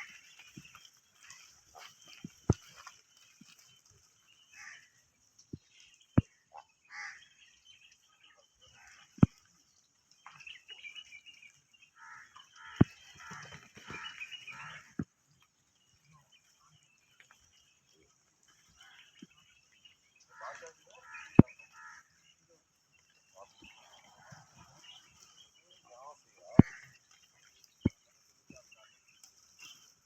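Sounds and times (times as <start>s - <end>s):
animals tearing and chewing grass: 12.0s - 15.0s.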